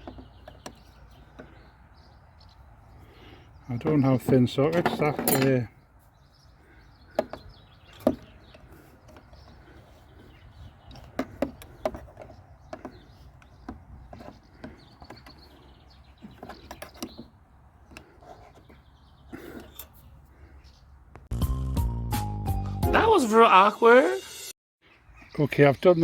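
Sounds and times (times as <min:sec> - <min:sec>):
metal hand tools clinking: 0:04.7 - 0:05.6.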